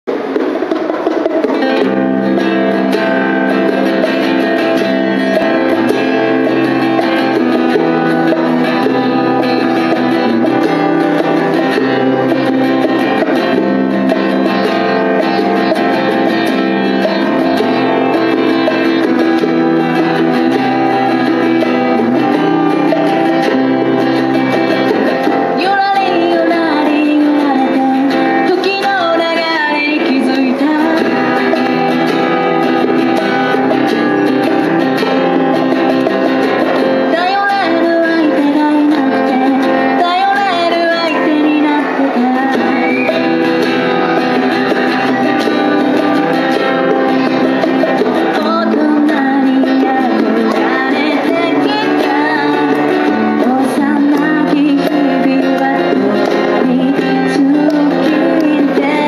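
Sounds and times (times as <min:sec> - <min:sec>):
strummed guitar: 0:00.0 - 0:59.0
person singing: 0:02.3 - 0:34.7, 0:36.5 - 0:59.0.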